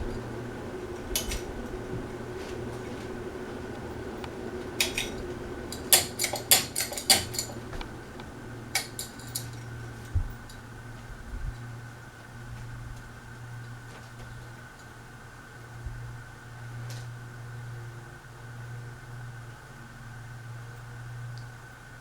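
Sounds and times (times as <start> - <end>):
ceiling fan motor hum: 0.0 - 22.0
sharp light clinks: 8.8 - 10.6.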